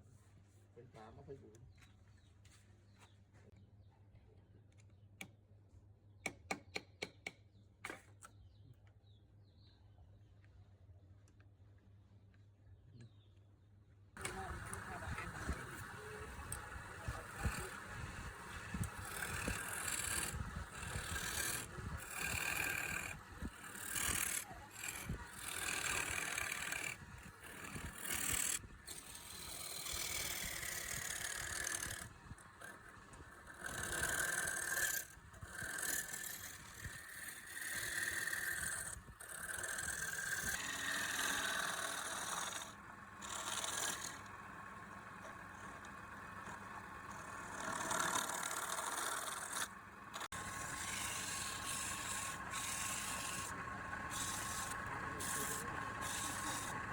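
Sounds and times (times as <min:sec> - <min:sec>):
turning tool scraping wood: 0:14.2 - 0:56.9
wood lathe running: 0:14.2 - 0:56.9.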